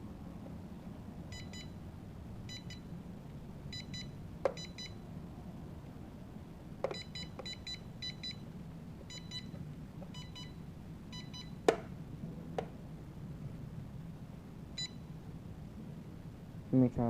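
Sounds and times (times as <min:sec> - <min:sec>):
high electronic beeps: 0:06.9 - 0:08.4.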